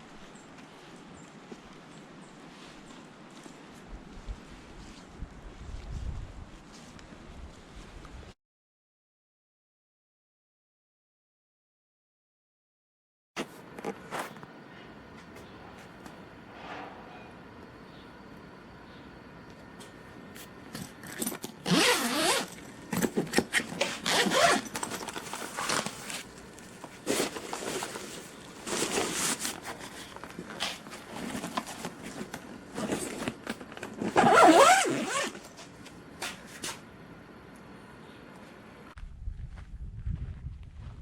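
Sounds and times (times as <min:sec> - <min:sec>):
tent zipper pulled open and closed: 0:21.2 - 0:26.3, 0:32.7 - 0:35.5.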